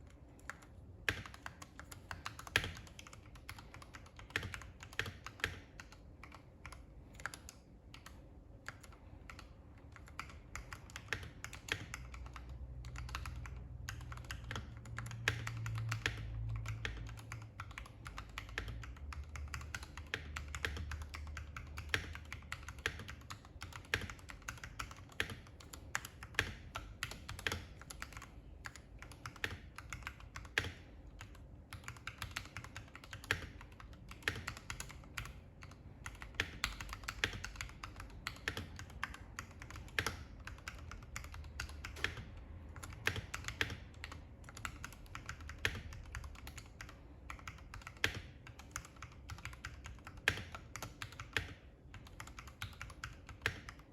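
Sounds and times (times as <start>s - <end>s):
faint low hum: 0.0s - 53.9s
keyboard typing clacks: 0.0s - 53.9s.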